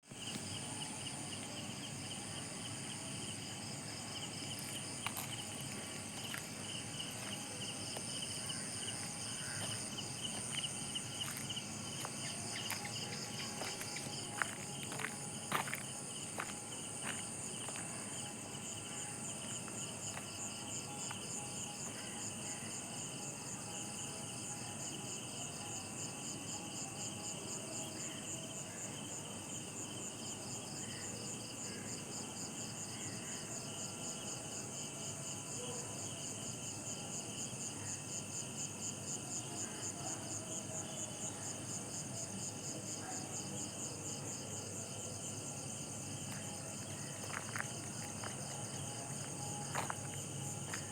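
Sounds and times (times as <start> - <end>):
crickets trilling: 0.1 - 29.3, 36.1 - 50.9
faint insect calls: 0.1 - 50.9.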